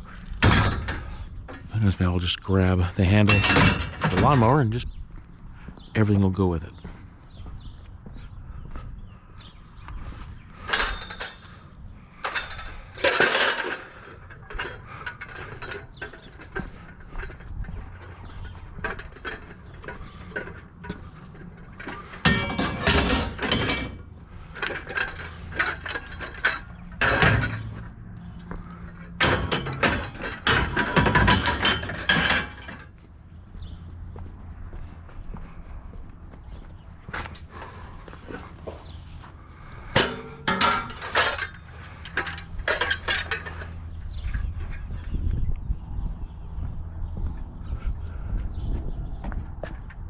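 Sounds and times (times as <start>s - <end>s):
scrap metal clanking and scraping: 0.0s - 4.8s, 10.0s - 33.1s, 37.0s - 45.1s.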